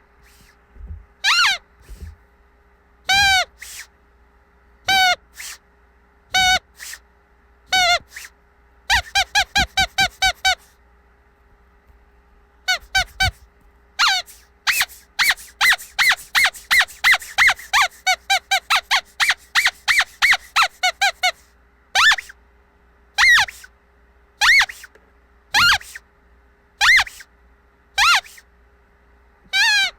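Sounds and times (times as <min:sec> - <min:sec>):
squeaky dog toy squeezed: 0:00.2 - 0:00.5, 0:01.2 - 0:02.2, 0:03.1 - 0:03.9, 0:04.9 - 0:05.6, 0:06.3 - 0:07.0, 0:07.7 - 0:10.8, 0:12.7 - 0:13.4, 0:14.0 - 0:22.4, 0:23.2 - 0:23.7, 0:24.4 - 0:26.0, 0:26.8 - 0:27.3, 0:28.0 - 0:28.5, 0:29.5 - 0:29.9.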